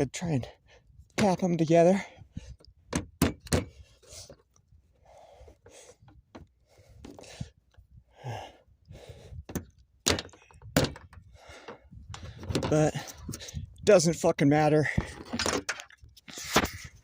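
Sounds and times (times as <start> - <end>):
heavy breathing: 3.7 - 9.6, 11.2 - 13.7.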